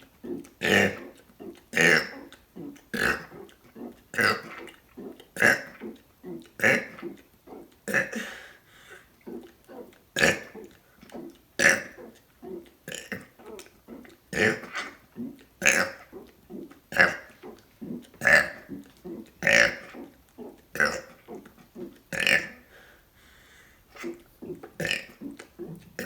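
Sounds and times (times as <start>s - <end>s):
person burping: 7.9s - 8.5s, 12.9s - 13.3s, 24.4s - 26.0s.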